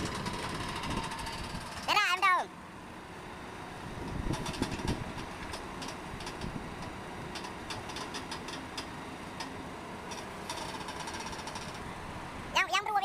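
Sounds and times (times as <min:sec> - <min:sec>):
excavator engine running: 0:00.0 - 0:13.0
metallic clicks and rattles: 0:04.3 - 0:09.5, 0:10.1 - 0:11.8.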